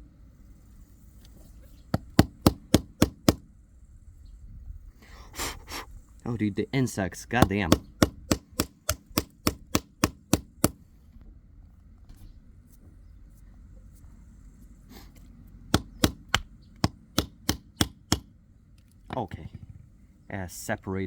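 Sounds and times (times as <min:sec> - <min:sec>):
chopping blows into plastic handle: 0:07.4 - 0:10.8, 0:15.8 - 0:18.3.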